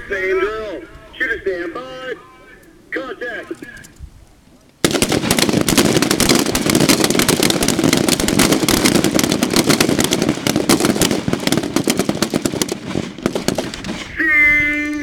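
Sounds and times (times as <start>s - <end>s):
rifles firing: 4.8s - 14.2s.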